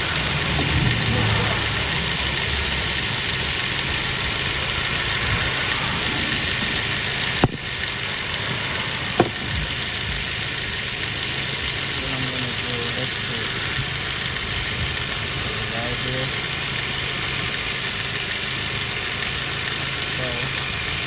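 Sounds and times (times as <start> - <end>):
car engine idling: 0.0 - 21.0
sharp clicks: 2.4 - 10.1.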